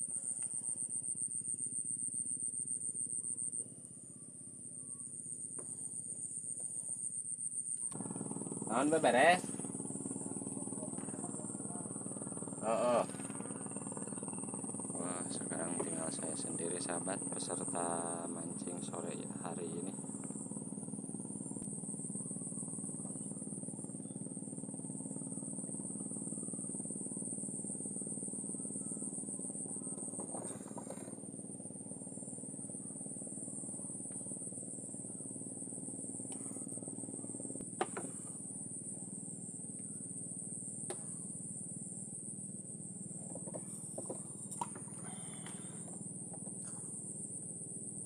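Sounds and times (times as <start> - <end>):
insects chirping: 0.0 - 48.0
low hum: 7.6 - 48.0
faint clicks and knocks: 43.2 - 46.9.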